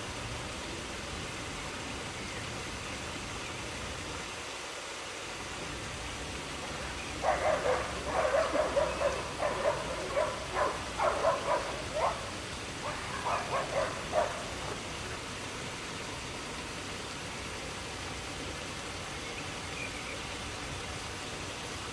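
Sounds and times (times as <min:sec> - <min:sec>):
waterfall rushing: 0:00.0 - 0:21.9
animal high calls: 0:07.2 - 0:14.9.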